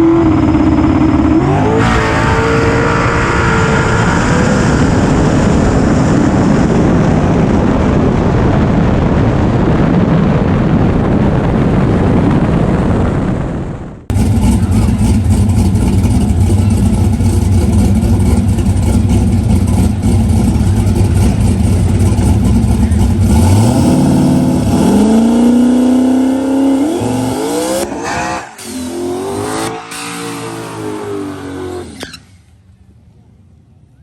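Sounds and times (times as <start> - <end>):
drag car engine revving: 0.0 - 8.0, 14.1 - 32.6.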